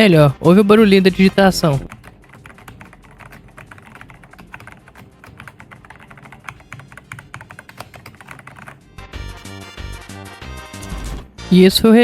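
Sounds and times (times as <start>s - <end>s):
mechanical keyboard typing: 0.2s - 8.8s.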